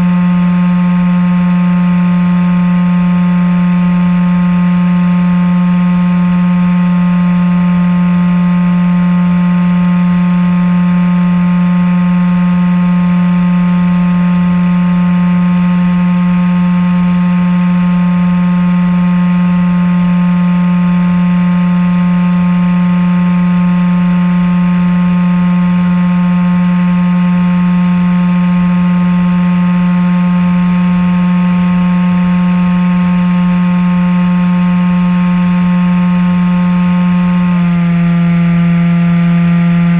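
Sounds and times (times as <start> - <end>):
model plane motor and propeller hum: 37.3 - 39.9.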